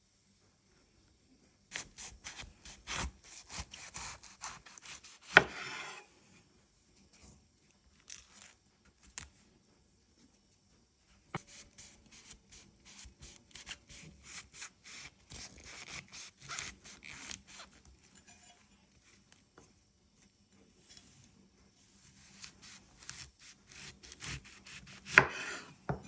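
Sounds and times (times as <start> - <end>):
knife cutting cauliflower: 1.7 - 6.1, 11.4 - 19.3, 21.0 - 26.0.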